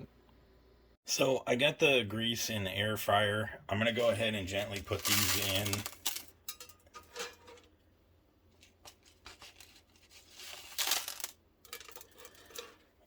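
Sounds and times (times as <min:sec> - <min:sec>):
food scraping and rustling in basket: 0:04.0 - 0:06.3, 0:07.0 - 0:07.7, 0:08.5 - 0:13.0.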